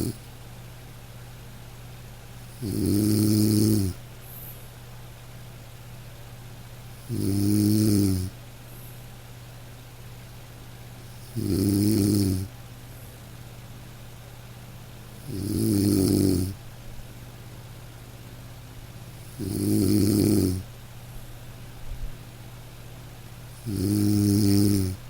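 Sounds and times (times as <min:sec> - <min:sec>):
person snoring: 0:00.0 - 0:00.2, 0:02.6 - 0:04.0, 0:07.0 - 0:08.3, 0:11.2 - 0:12.5, 0:15.2 - 0:16.6, 0:19.2 - 0:20.6, 0:23.6 - 0:25.0.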